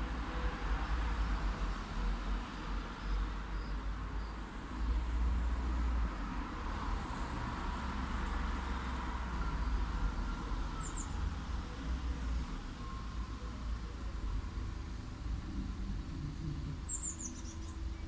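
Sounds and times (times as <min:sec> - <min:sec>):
light city traffic: 0:00.0 - 0:18.0
faint bird chirp: 0:10.2 - 0:11.2, 0:16.9 - 0:18.0.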